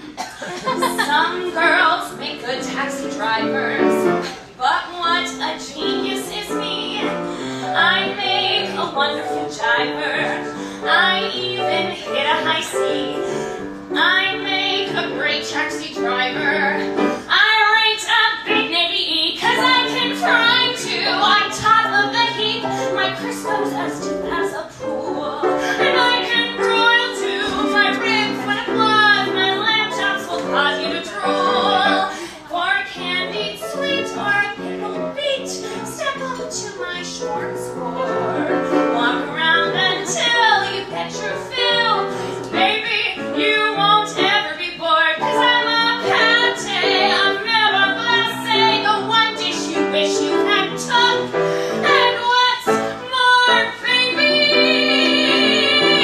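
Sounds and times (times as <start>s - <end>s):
woman singing a show tune: 0.7s - 7.2s, 14.0s - 51.2s, 51.8s - 56.0s
instrumental accompaniment: 45.2s - 56.0s.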